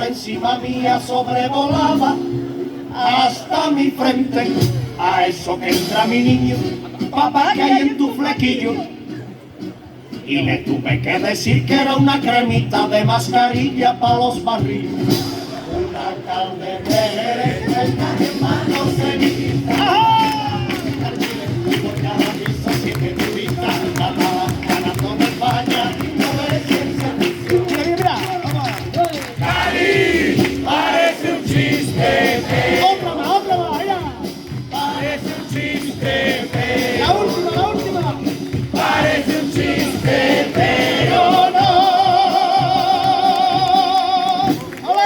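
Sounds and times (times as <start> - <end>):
group singing in chorus: 0.0 - 8.6, 15.1 - 27.5, 29.4 - 33.8, 34.4 - 37.6, 38.5 - 44.0
percussion steady beat: 4.0 - 45.0.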